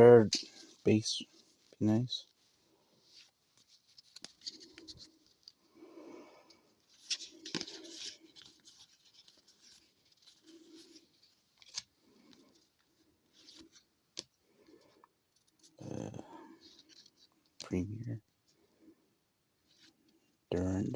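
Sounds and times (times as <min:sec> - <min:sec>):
cards sliding and rustling: 0:03.1 - 0:05.6, 0:06.5 - 0:14.8.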